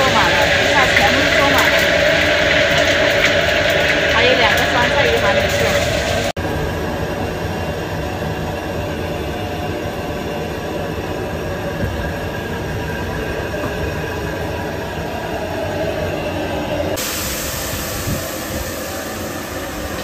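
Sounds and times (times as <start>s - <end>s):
kitchen equipment roaring: 0.0s - 20.0s.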